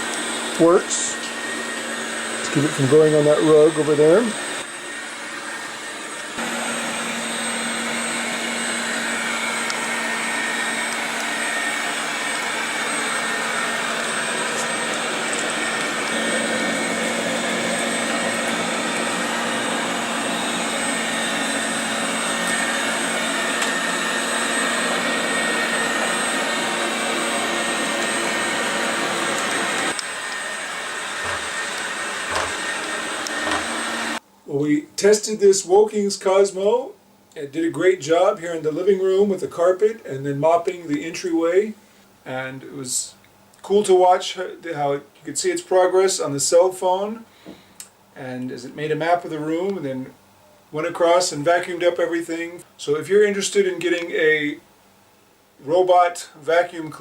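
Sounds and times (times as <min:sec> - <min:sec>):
robot vacuum whirring hum: 0:00.0 - 0:34.2.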